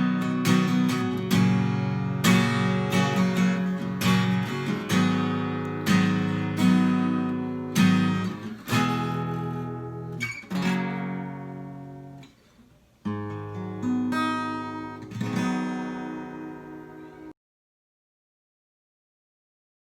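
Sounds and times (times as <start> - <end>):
acoustic guitar strumming chords: 0.0 - 12.4, 13.0 - 17.3.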